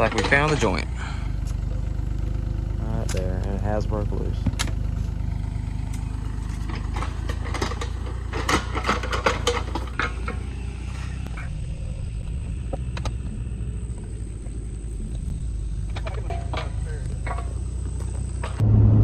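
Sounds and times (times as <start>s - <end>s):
metal clanks and scrapes: 0.0s - 3.6s, 4.5s - 11.5s, 16.0s - 18.6s
excavator engine running: 0.0s - 19.0s.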